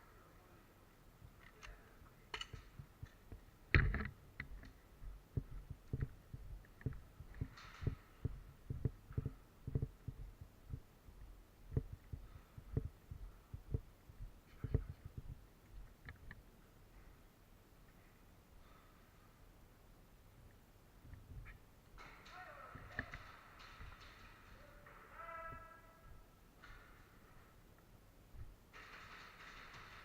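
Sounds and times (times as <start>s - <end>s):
footsteps dull thuds: 2.6s - 17.2s.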